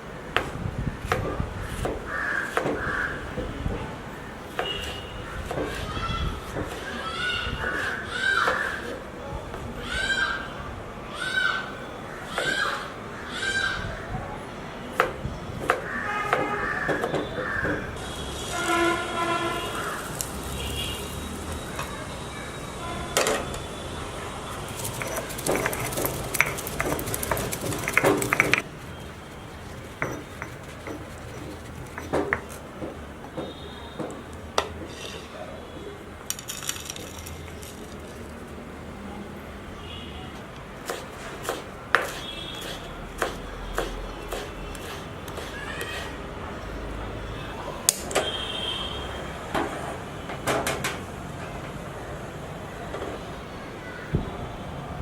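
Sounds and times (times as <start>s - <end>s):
low background noise: 0.0s - 55.0s
kitchen utensils clattering: 24.6s - 33.0s.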